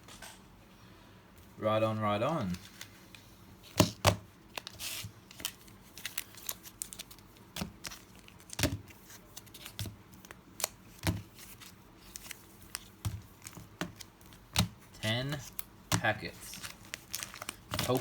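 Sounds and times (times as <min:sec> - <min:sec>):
foil wrapper crinkling: 0:04.5 - 0:18.0.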